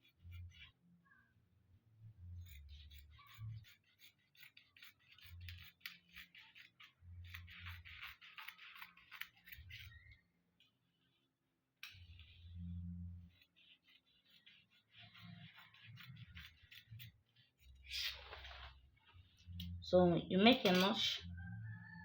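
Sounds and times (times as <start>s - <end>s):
scissors snipping fabric: 2.4s - 10.2s, 13.3s - 18.2s.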